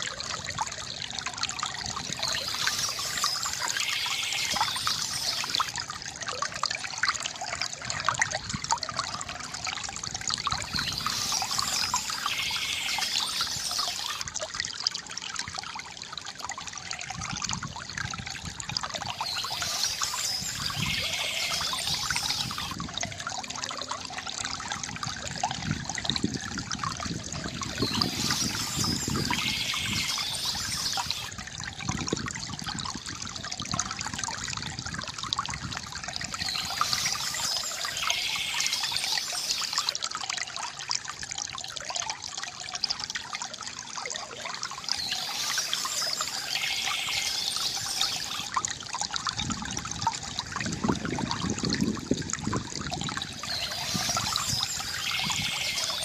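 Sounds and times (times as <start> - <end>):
stream trickling over stones: 0.0 - 56.0
bird song: 2.0 - 5.7, 10.6 - 14.2, 19.1 - 22.8, 27.6 - 31.3, 36.3 - 39.9, 44.8 - 48.5, 53.2 - 56.0.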